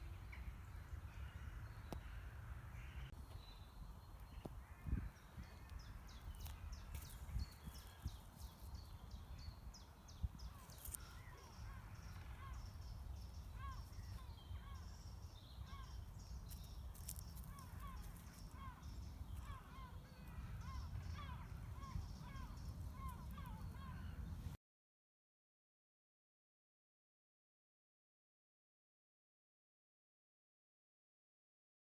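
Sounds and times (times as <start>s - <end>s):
birds twittering and chirping: 0.0s - 24.6s.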